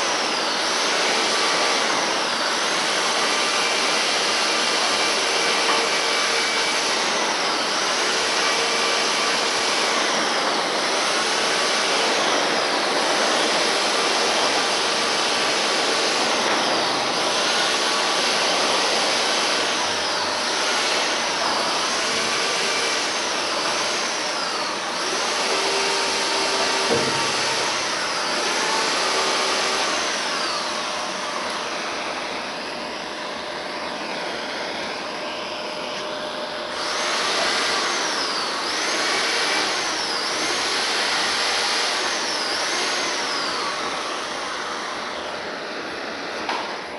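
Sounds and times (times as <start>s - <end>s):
gas torch hissing: 19.4s - 30.3s.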